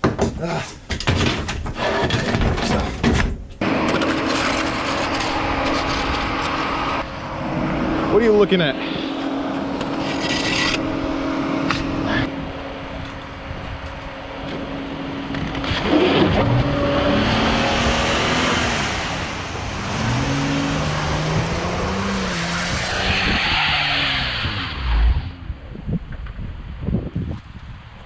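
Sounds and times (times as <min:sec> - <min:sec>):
van engine revving: 0:03.6 - 0:12.9, 0:14.1 - 0:25.4
wheels spinning in snow: 0:03.6 - 0:25.4.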